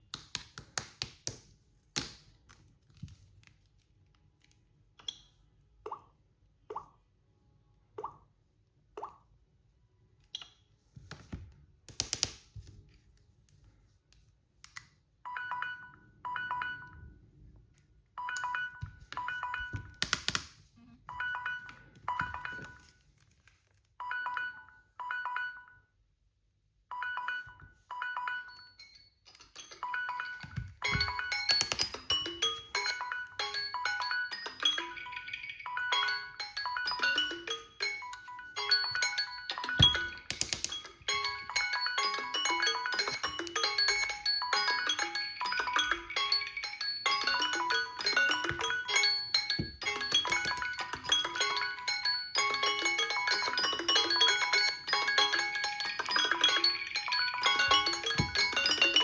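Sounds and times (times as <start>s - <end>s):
phone taps and blips: 18.2s - 23.0s, 29.8s - 35.0s, 36.7s - 46.0s, 47.2s - 51.8s, 52.9s - 59.0s.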